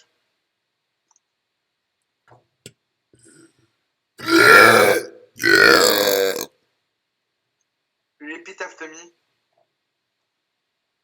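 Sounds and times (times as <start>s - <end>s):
loud burps: 4.2s - 6.5s.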